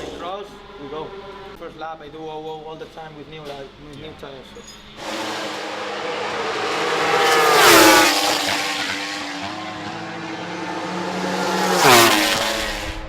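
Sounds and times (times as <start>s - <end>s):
racing motorcycles passing by: 5.0s - 13.0s.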